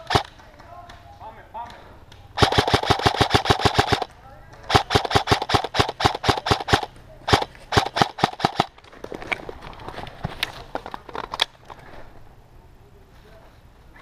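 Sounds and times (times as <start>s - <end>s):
airsoft rifle firing bursts: 0.0s - 0.4s, 2.4s - 8.8s.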